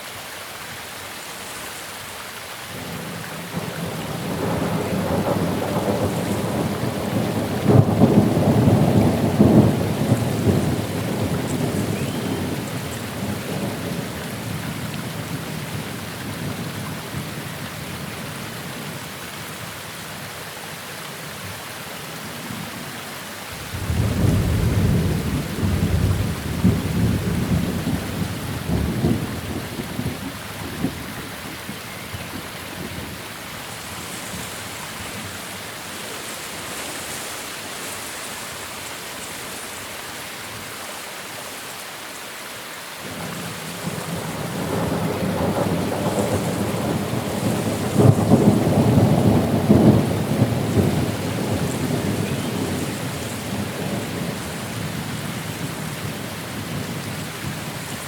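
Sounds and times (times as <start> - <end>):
steady rain: 0.0 - 58.0
thunder rumbling: 3.5 - 14.8, 23.6 - 31.7, 43.1 - 58.0.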